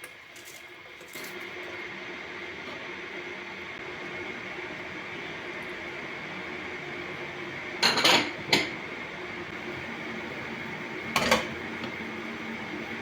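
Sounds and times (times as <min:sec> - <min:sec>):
dishes and utensils clattering: 0:07.8 - 0:08.8, 0:11.1 - 0:11.9.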